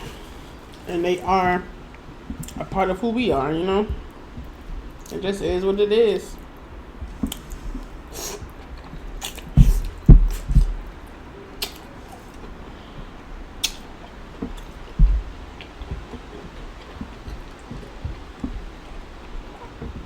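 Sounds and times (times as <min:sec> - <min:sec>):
chewing and wet mouth sounds: 0:00.0 - 0:05.6, 0:06.2 - 0:20.0
heavy low thumps: 0:00.0 - 0:05.8, 0:06.4 - 0:11.3, 0:14.2 - 0:20.0
mouth smacks and clicks: 0:00.1 - 0:02.8, 0:07.0 - 0:12.6, 0:13.5 - 0:20.0.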